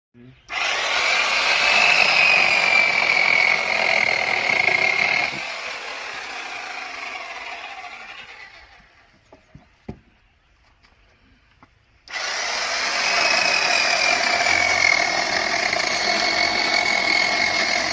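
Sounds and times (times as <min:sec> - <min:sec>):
electric chainsaw motor whining: 0:00.5 - 0:09.0, 0:12.1 - 0:17.9.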